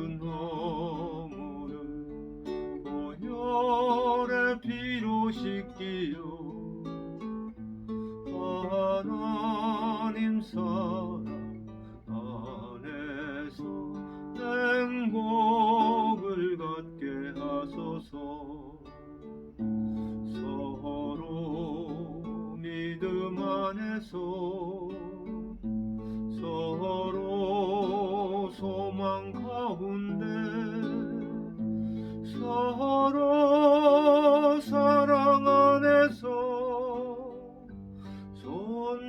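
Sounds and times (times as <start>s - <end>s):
acoustic guitar hymn accompaniment: 0.0s - 39.0s.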